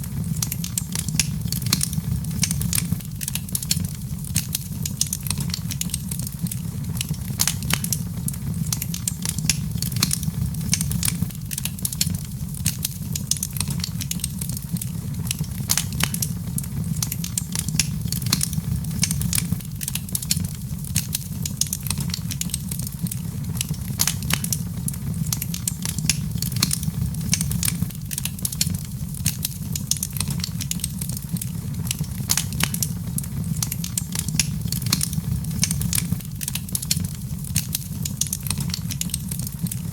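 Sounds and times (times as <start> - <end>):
low fire rumble: 0.0 - 39.9
wood fire crackling and popping: 0.0 - 39.9.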